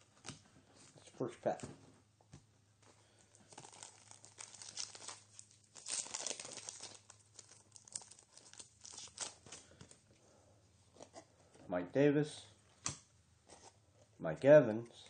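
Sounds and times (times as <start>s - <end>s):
wrapper tearing and crinkling: 3.4s - 9.9s.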